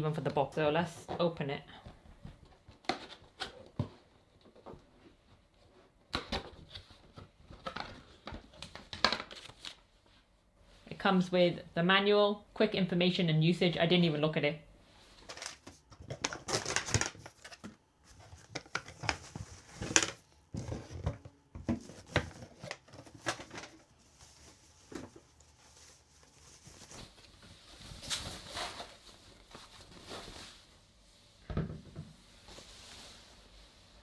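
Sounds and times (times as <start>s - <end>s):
packaging rustling: 15.2s - 27.3s.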